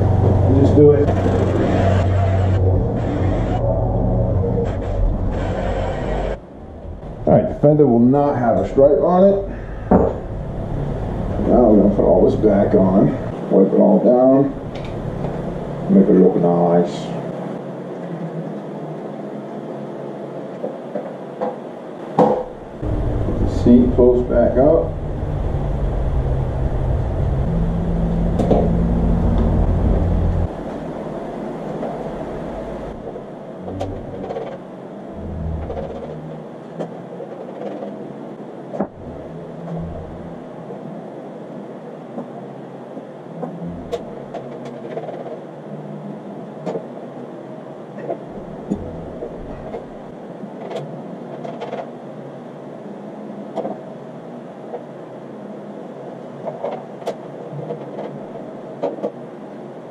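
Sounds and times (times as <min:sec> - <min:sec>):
low rumble: 0:00.0 - 0:13.5, 0:14.4 - 0:16.4, 0:22.5 - 0:34.4, 0:35.1 - 0:36.4, 0:38.9 - 0:40.6, 0:48.3 - 0:50.1.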